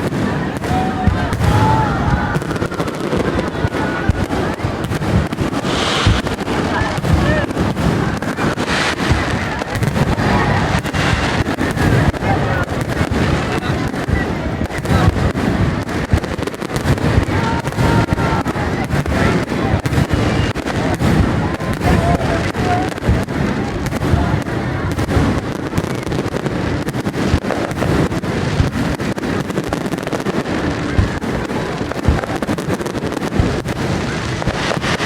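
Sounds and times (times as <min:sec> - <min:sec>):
fireworks bangs and crackles: 0:00.0 - 0:35.0.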